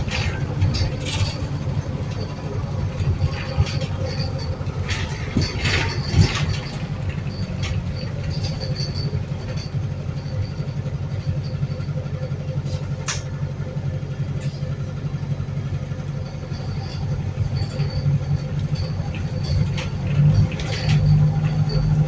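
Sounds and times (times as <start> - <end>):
bus engine drone: 0.0 - 22.0.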